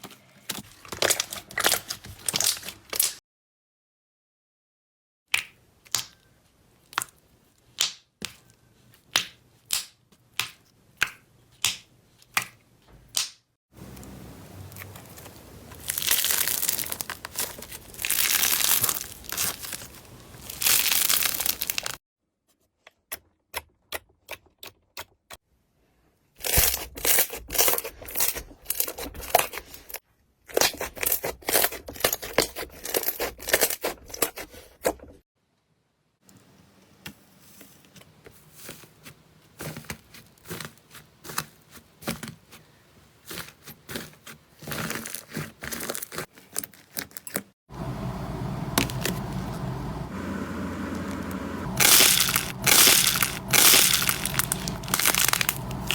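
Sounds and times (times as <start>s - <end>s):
slime crackling and crinkling: 0.6s - 3.1s, 14.6s - 22.0s, 43.2s - 50.0s, 50.9s - 55.9s.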